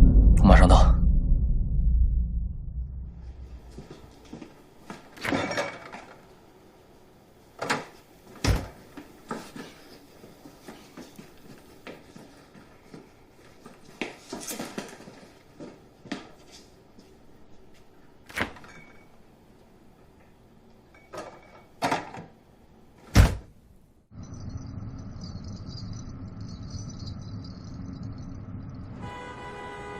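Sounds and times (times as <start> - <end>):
heavy thump: 0.0 - 4.2.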